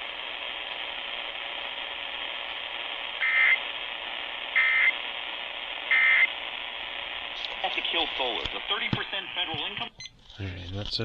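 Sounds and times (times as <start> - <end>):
buzzy electronic data burst: 0.0 - 9.5
radio reception hiss: 0.0 - 11.0.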